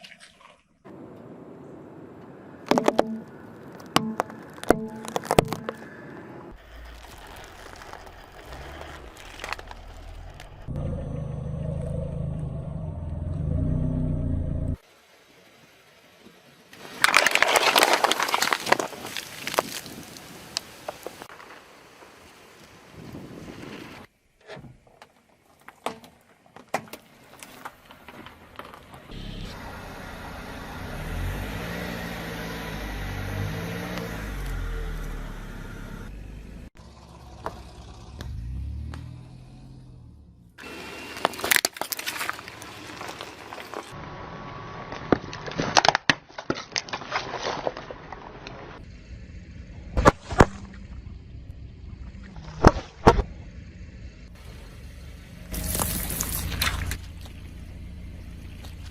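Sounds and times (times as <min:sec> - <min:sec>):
objects crushed under tyres: 0:02.7 - 0:10.7, 0:16.8 - 0:20.2, 0:40.6 - 0:44.0, 0:44.9 - 0:48.8
car engine running: 0:02.7 - 0:14.8, 0:29.0 - 0:41.6, 0:53.2 - 0:58.9.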